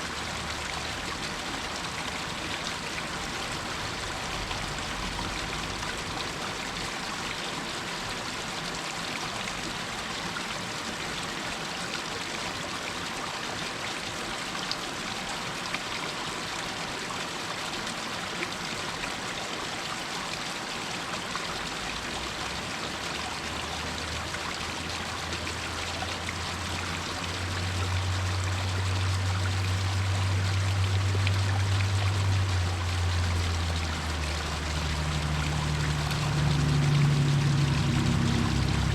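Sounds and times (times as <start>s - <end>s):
stream water rushing: 0.0s - 38.9s
low droning hum: 25.5s - 38.9s.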